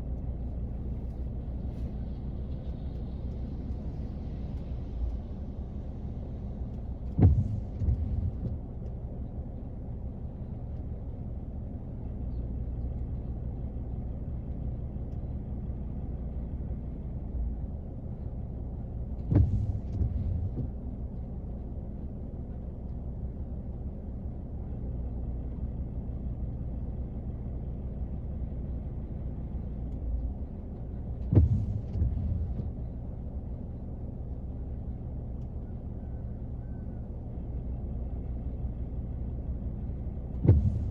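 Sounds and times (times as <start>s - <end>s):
rain on car roof: 6.9s - 8.6s
low thumps: 7.0s - 8.8s, 19.1s - 21.0s, 30.2s - 33.5s, 40.2s - 40.9s.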